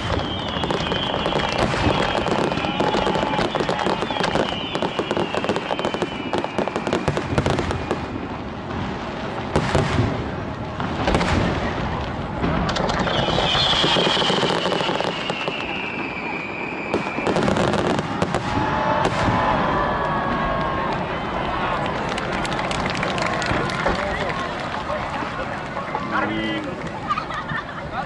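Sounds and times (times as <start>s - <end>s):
falling high whistle: 0.0s - 8.0s, 13.0s - 17.8s
fireworks bursting and crackling: 0.0s - 28.0s.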